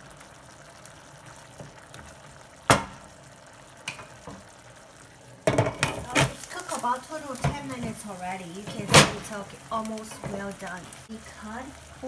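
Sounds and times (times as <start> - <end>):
curry sauce bubbling in a pan: 0.0 - 12.0
utensil knocking against pan: 5.5 - 6.3
lid clattering against pan: 5.5 - 6.4, 8.6 - 9.4.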